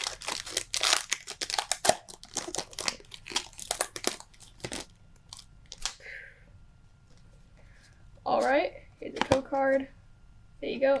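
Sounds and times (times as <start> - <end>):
foil wrapper crinkling: 0.0 - 6.0.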